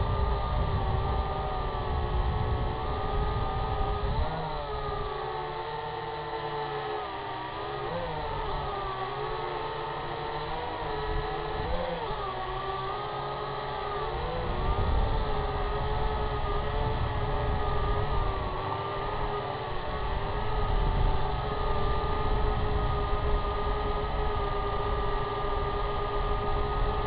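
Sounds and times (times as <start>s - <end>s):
drone propellers whining: 0.0s - 27.0s
wind rumble on microphone: 0.0s - 27.0s.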